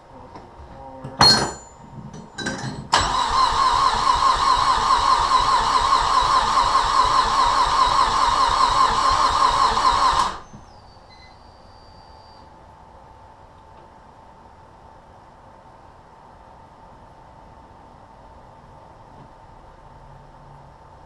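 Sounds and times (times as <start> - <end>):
starter motor cranking engine: 3.0 - 10.4.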